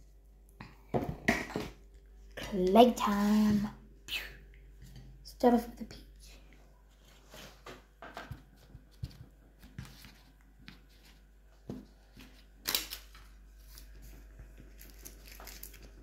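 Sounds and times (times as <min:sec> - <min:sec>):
clay rustle: 0:06.0 - 0:16.0.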